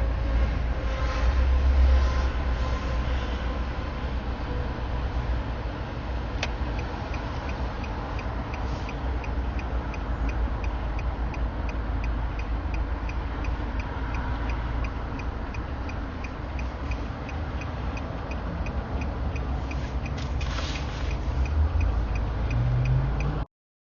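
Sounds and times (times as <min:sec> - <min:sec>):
road rumble inside car: 0:00.0 - 0:23.5
turn signal ticking: 0:06.3 - 0:23.5.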